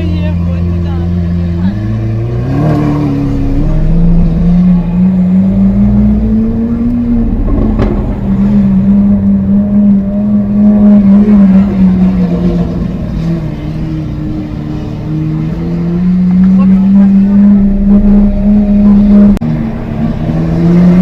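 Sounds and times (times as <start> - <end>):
car engine running at low revs: 0.0 - 21.0
exhaust crack: 3.2 - 13.8.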